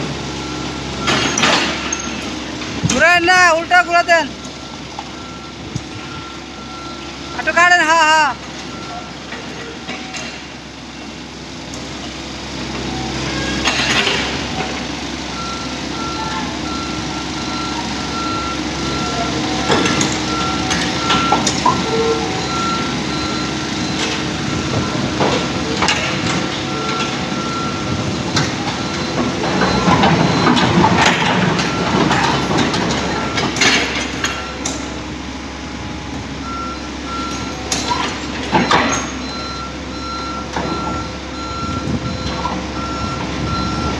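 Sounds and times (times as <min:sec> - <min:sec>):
excavator diesel engine running: 0:00.0 - 0:43.9
travel alarm beeping: 0:03.0 - 0:09.3, 0:15.3 - 0:35.0, 0:35.8 - 0:43.9
track clatter: 0:18.2 - 0:35.1.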